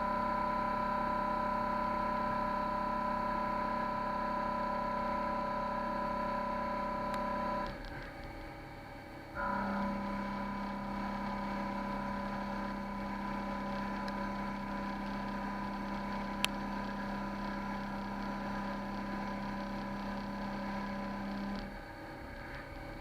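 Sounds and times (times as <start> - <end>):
lathe humming and whining: 0.0 - 23.0.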